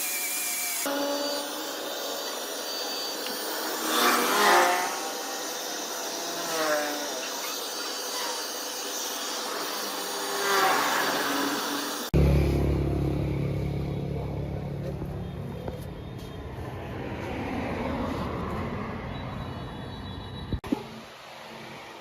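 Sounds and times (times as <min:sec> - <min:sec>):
electric power tool on wood: 0:00.0 - 0:12.9.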